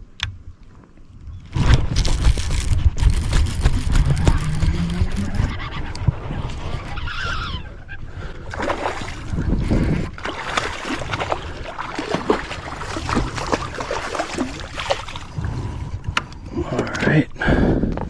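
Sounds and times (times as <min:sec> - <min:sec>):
water splashing: 0:01.6 - 0:15.8.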